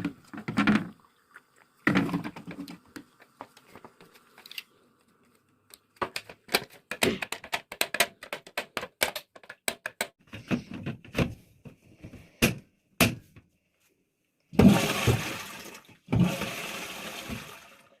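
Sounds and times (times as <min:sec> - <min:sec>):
plastic and ceramic parts clicking: 0:05.7 - 0:10.2
toilet flushing: 0:14.6 - 0:18.0.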